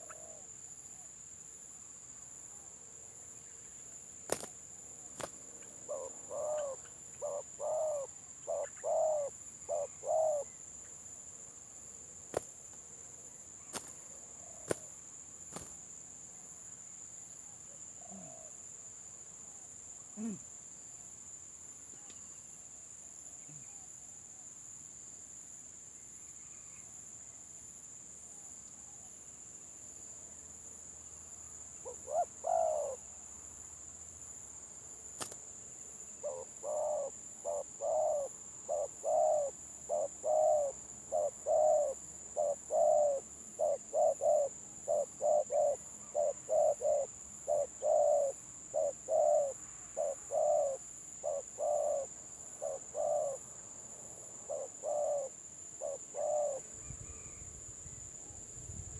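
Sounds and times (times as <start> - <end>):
dove cooing: 5.2 - 10.6, 31.8 - 33.0, 36.2 - 53.4, 54.5 - 57.3.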